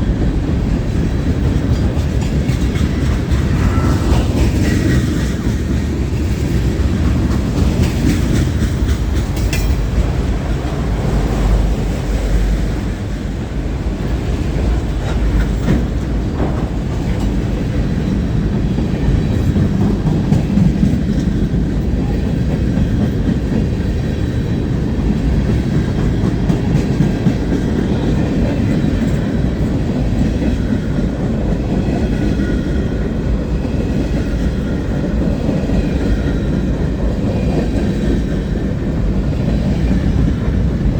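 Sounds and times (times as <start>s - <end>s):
freight train rolling past: 0.0s - 40.9s
wheels clicking over rail joints: 0.1s - 11.6s.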